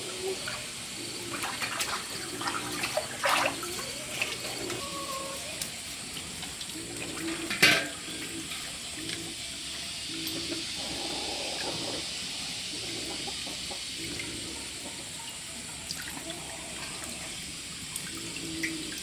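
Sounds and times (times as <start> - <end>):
stream water running: 0.0 - 19.0
sharp water splashes: 1.3 - 4.4.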